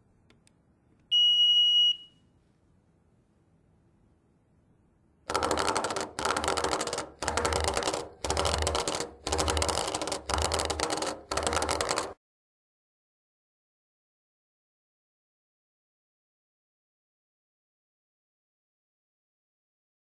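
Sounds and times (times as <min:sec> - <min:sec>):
vibrating fire alarm buzzing: 0:05.3 - 0:12.1.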